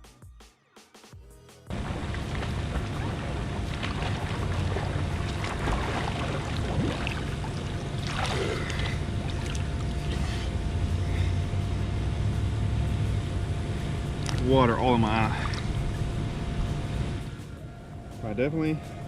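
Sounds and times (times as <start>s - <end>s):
water splashing from swimming: 1.7s - 10.6s, 14.2s - 17.4s
steady low rumble: 1.7s - 19.0s.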